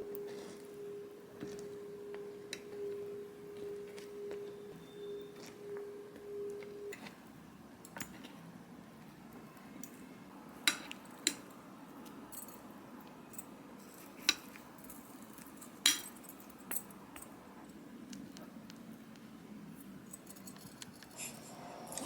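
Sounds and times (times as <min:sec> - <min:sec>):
low steady hum: 0:00.0 - 0:22.0
utensils clinking on dishes: 0:10.6 - 0:11.6, 0:13.4 - 0:17.3.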